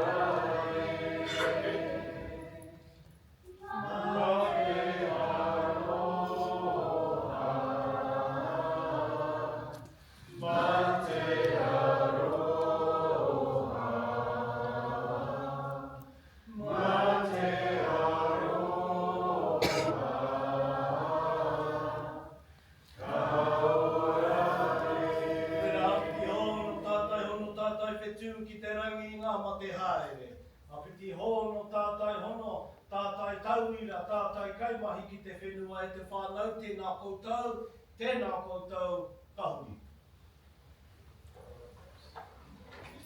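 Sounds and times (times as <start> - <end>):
group singing in unison: 0.0 - 27.1.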